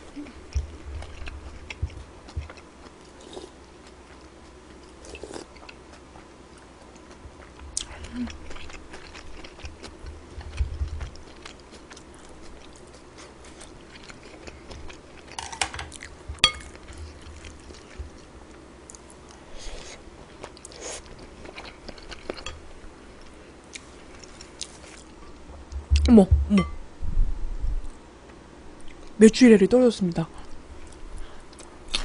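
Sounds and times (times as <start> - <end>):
chewing and biting food: 0.1 - 22.6.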